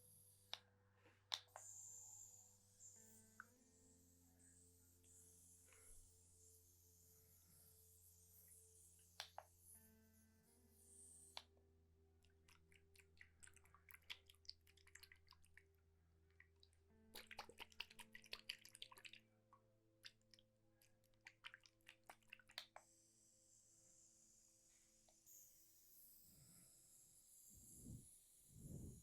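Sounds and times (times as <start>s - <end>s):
water dripping and trickling: 12.2s - 22.8s.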